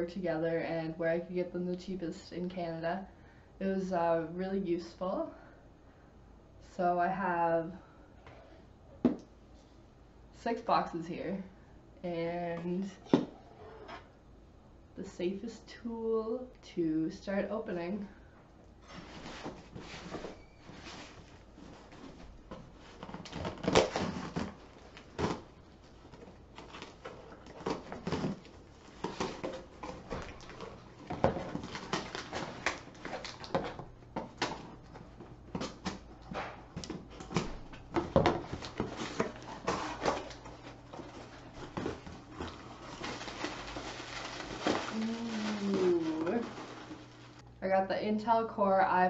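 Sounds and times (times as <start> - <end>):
cardboard and packaging rustling: 18.8 - 47.4.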